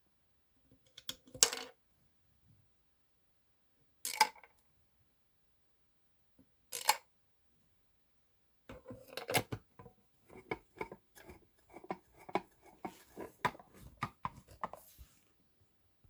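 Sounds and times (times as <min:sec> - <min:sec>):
plastic parts clicking and tapping: 0:00.8 - 0:01.6, 0:06.7 - 0:07.0, 0:08.7 - 0:14.8.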